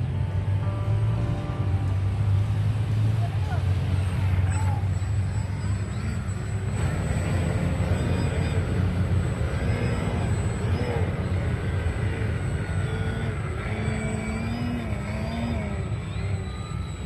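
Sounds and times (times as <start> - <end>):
steady low rumble: 0.0 - 15.1
model airplane motor: 4.0 - 17.0.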